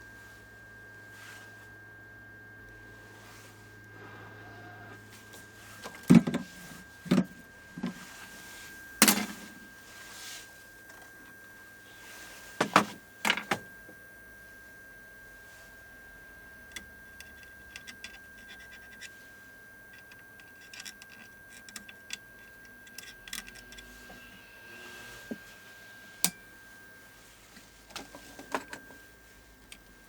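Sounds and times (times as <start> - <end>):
steady high-pitched whine: 0.0 - 30.0.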